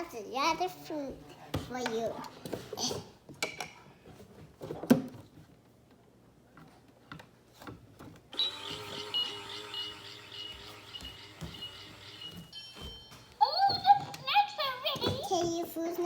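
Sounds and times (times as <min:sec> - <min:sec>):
toy microwave hum: 0:08.3 - 0:12.7
high broken electronic tone: 0:08.4 - 0:12.6.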